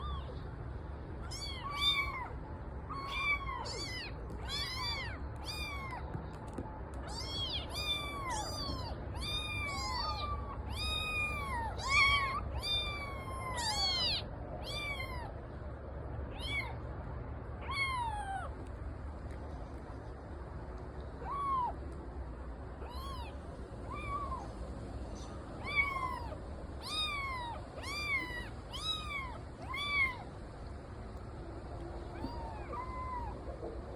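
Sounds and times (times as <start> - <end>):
kitten meowing: 0.0 - 0.4, 1.2 - 15.3, 16.3 - 16.8, 17.6 - 18.5, 21.2 - 21.8, 22.8 - 24.5, 25.6 - 30.3, 32.1 - 33.4.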